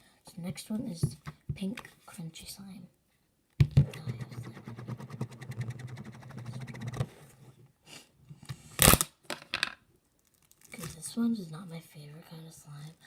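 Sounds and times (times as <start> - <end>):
crunchy slime crackling: 10.2 - 10.9.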